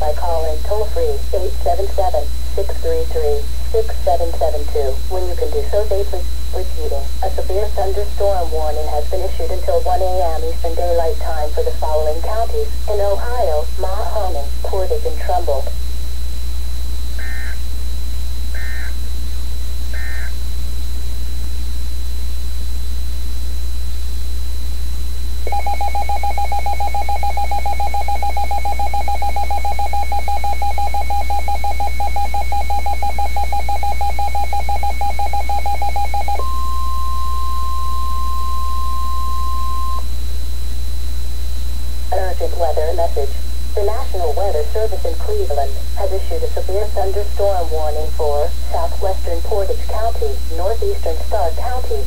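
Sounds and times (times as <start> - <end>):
single steady tone: 16.4 - 42.0
digital data tone bursts: 17.1 - 17.8, 18.5 - 19.2, 19.8 - 20.6, 25.5 - 40.1.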